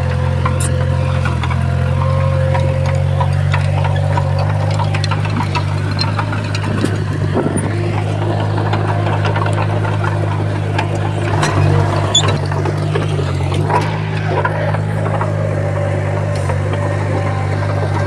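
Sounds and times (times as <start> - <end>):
diesel engine running: 0.0 - 18.0
sharp clicks and clanks: 0.0 - 18.0.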